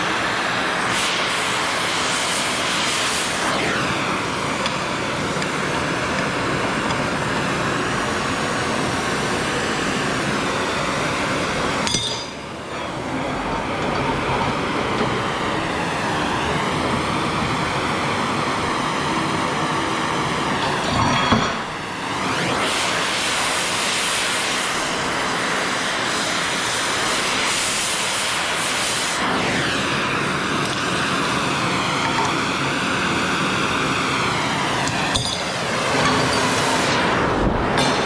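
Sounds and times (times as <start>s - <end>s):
gas torch flame rushing: 0.0s - 38.0s
faint metallic clink: 11.9s - 12.5s.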